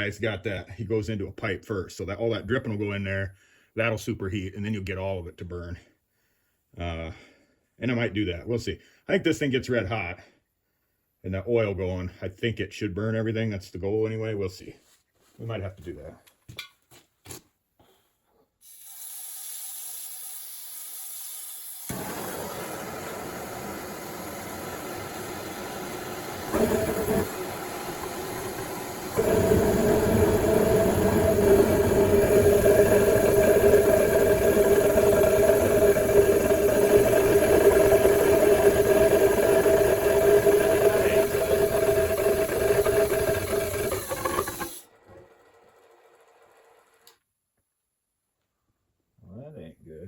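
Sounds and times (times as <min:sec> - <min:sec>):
oil burner hissing rush: 0:18.6 - 0:44.9
steady hum: 0:22.0 - 0:44.8.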